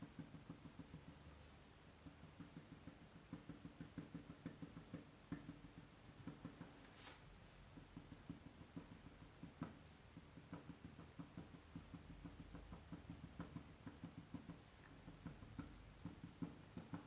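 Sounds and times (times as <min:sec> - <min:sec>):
marker drawing on paper: 0:06.6 - 0:07.2.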